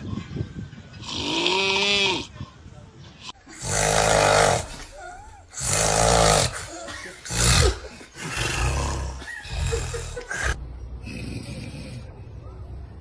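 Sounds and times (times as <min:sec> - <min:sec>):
loud rasping snoring: 0:03.5 - 0:04.8, 0:05.6 - 0:06.7, 0:11.0 - 0:12.1.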